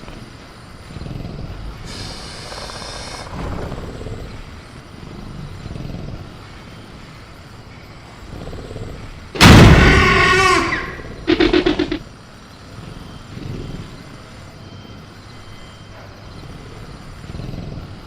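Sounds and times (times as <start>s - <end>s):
low jungle ambience rumble: 0.0s - 18.0s
faint high creature call: 9.4s - 12.0s
loud crash against a cage: 9.4s - 12.0s
screeching roar: 9.4s - 12.0s.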